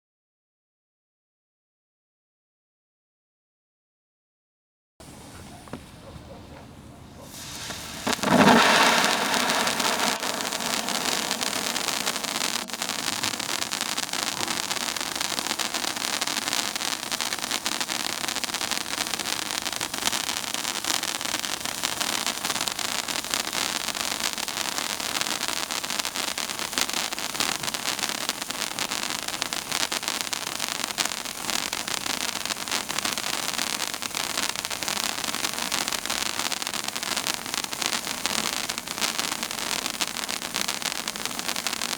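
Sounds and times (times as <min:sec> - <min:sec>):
firework fountain hissing and crackling: 0:05.0 - 0:41.9.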